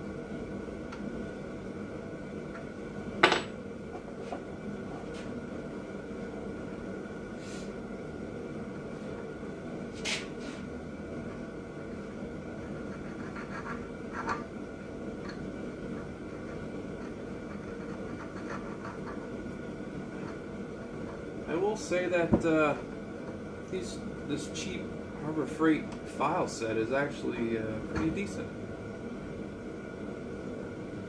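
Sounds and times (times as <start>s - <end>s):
steady hum: 0.0s - 31.0s
hand file scratching metal: 17.5s - 19.1s.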